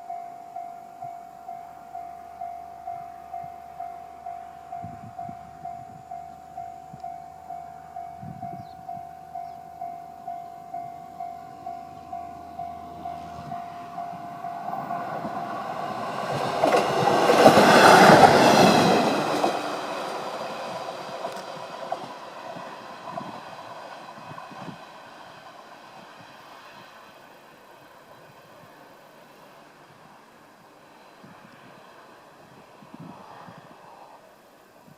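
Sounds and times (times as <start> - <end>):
level-crossing bell ringing: 0.0 - 16.2
diesel railcar engine: 0.0 - 34.9
train wheels on rails: 0.0 - 34.9.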